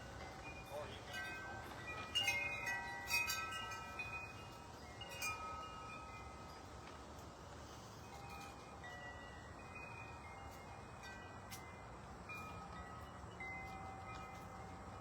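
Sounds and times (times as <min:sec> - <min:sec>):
wind chimes ringing: 0:00.2 - 0:06.7.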